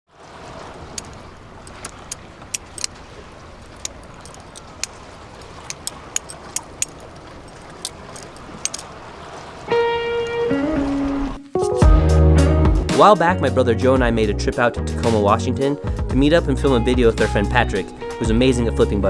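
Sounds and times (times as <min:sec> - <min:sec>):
music with piano-like notes: 0:09.7 - 0:19.0.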